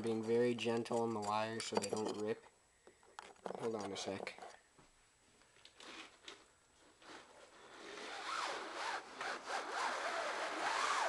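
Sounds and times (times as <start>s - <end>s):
rubbing and scraping with squeak: 3.2s - 4.6s, 5.8s - 11.0s.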